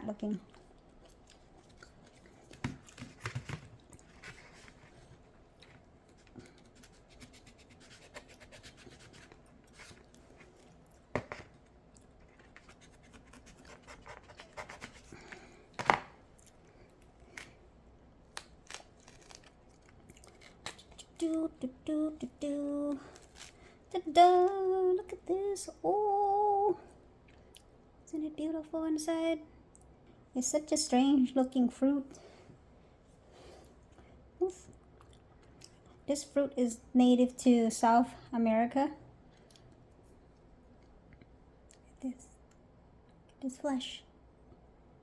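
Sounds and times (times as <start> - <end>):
scratching and rubbing on pod shell: 6.1 - 10.6, 12.2 - 15.2.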